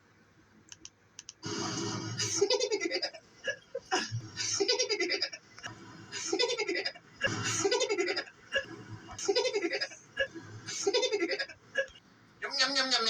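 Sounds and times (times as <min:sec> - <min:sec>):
faint clicks: 0:00.6 - 0:01.4
person laughing and giggling: 0:02.2 - 0:13.0.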